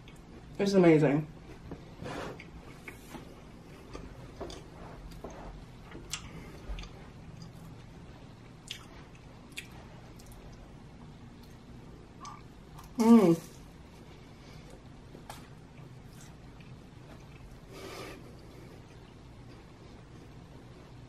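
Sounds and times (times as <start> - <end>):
chewing pastry: 2.4 - 10.7.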